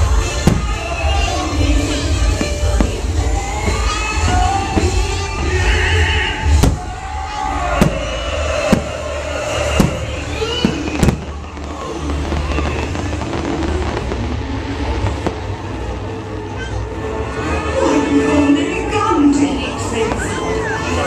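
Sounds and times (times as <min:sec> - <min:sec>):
fireworks bangs: 0:00.0 - 0:16.8
low rumble: 0:00.0 - 0:18.9
music: 0:00.0 - 0:21.0.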